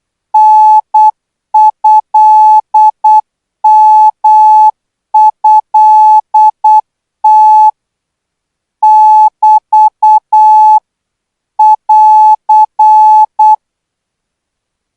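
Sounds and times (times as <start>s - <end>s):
morse code beeps: 0.4s - 7.7s, 8.8s - 10.8s, 11.6s - 13.6s.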